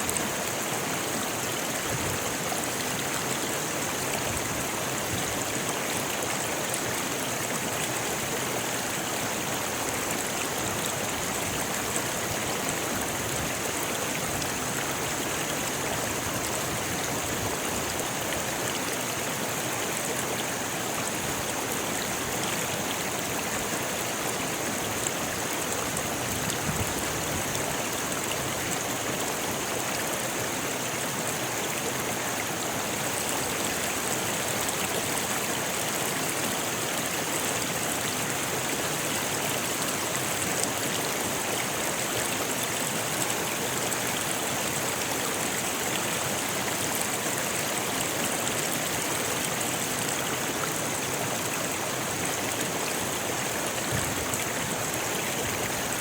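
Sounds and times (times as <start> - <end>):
river rushing over stones: 0.0 - 56.0.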